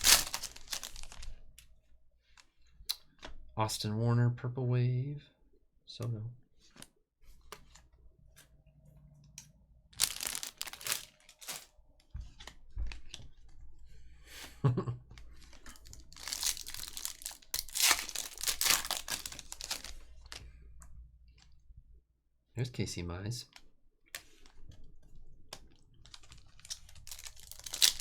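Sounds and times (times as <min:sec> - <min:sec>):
card pack wrappers tearing: 0:00.0 - 0:01.4, 0:10.0 - 0:11.7, 0:15.4 - 0:20.4, 0:26.0 - 0:28.0.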